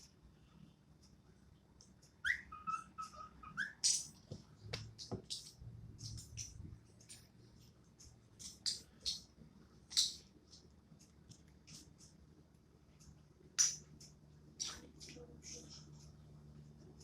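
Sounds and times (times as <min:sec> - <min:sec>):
cockatiel whistling: 0:02.2 - 0:03.9.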